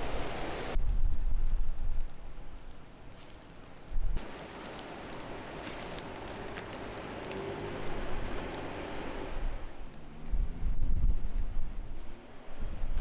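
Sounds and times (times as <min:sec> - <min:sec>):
beef sizzling: 0:00.0 - 0:00.8, 0:04.2 - 0:09.6.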